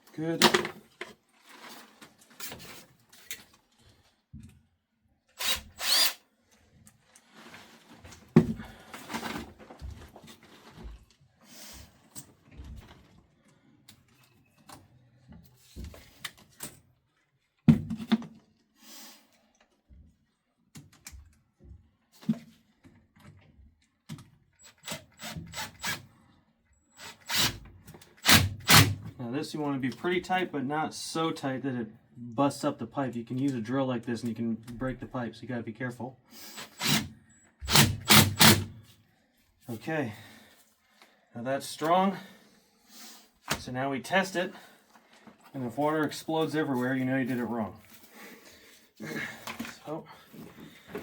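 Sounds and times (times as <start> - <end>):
cordless drill driving screws: 5.4 - 6.2, 24.6 - 26.0, 27.0 - 27.6, 28.2 - 29.0, 36.5 - 38.7.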